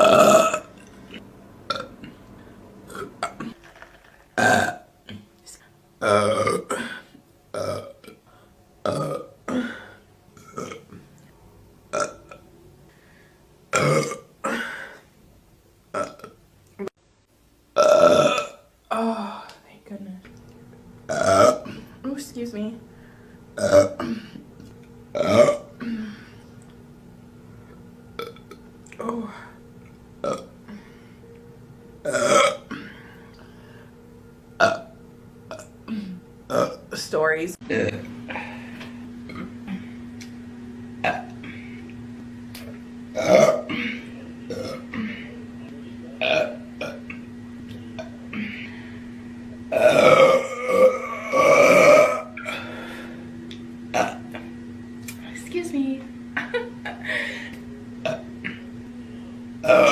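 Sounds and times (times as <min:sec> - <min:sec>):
woman burping: 0:00.0 - 0:00.9, 0:01.7 - 0:02.2, 0:02.9 - 0:05.3, 0:06.0 - 0:08.2, 0:08.8 - 0:11.0, 0:11.9 - 0:12.4, 0:13.7 - 0:15.0, 0:15.9 - 0:16.9, 0:17.8 - 0:19.4, 0:21.1 - 0:22.0, 0:23.6 - 0:24.5, 0:25.2 - 0:26.4, 0:28.2 - 0:29.6, 0:30.2 - 0:30.8, 0:32.0 - 0:33.1, 0:34.6 - 0:34.9, 0:35.5 - 0:36.8, 0:37.6 - 0:40.0, 0:41.0 - 0:41.6, 0:43.2 - 0:45.3, 0:46.2 - 0:47.2, 0:48.0 - 0:48.8, 0:49.7 - 0:52.8, 0:53.9 - 0:54.4, 0:58.0 - 0:58.7, 0:59.6 - 0:59.9.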